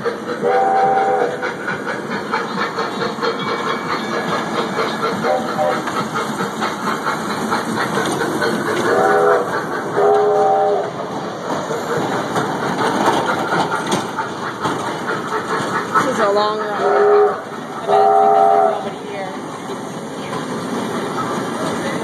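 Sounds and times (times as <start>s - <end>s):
train rumbling along track: 0.0s - 22.0s
wheels clacking over rail joints: 0.0s - 22.0s
train horn blasts: 0.4s - 1.3s, 10.0s - 10.8s, 16.8s - 18.9s.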